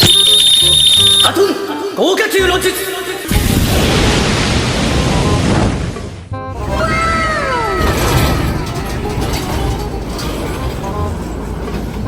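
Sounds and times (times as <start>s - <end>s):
large vehicle engine rumbling: 6.4s - 12.0s.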